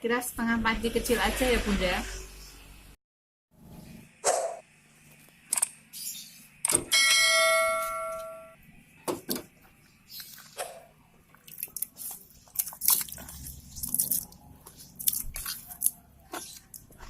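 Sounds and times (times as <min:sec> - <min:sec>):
metal ringing: 0:06.9 - 0:08.6.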